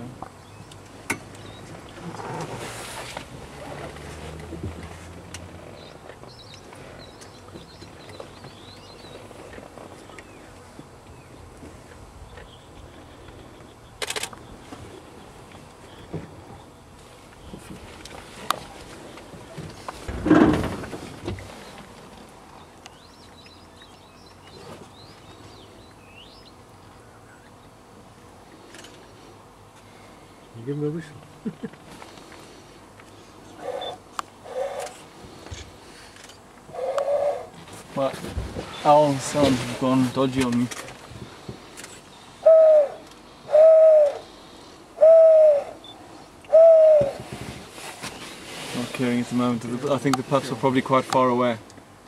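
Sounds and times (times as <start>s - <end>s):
bush ambience: 0.0s - 52.0s
loud rustle: 2.0s - 5.7s, 47.1s - 49.5s
owl-like hoots: 33.6s - 35.0s, 36.7s - 37.6s, 42.4s - 44.3s, 45.0s - 47.3s.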